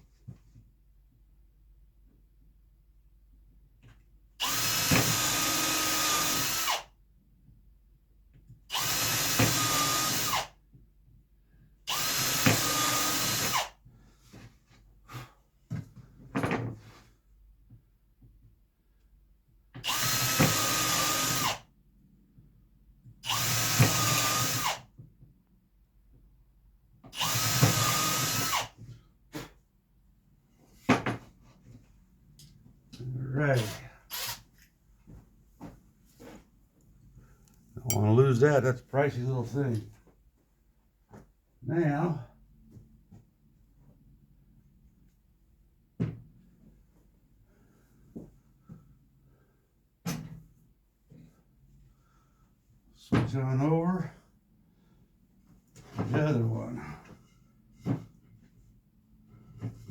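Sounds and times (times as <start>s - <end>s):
power drill into wood: 4.4s - 6.9s, 8.7s - 10.6s, 11.9s - 13.8s, 19.8s - 21.7s, 23.2s - 24.9s, 27.1s - 28.8s, 33.5s - 34.5s.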